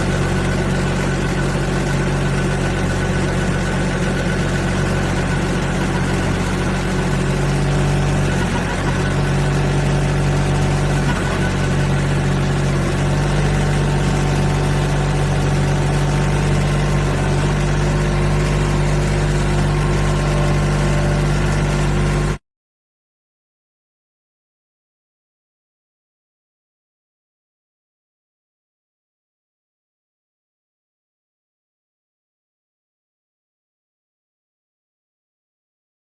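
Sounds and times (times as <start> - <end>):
car engine low drone: 0.0 - 22.4.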